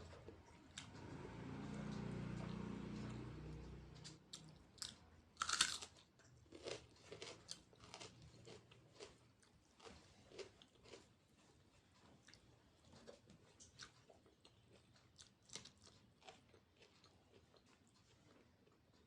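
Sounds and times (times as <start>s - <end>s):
close-up chewing with clicks: 3.9s - 19.0s
crunchy bite: 5.4s - 5.9s.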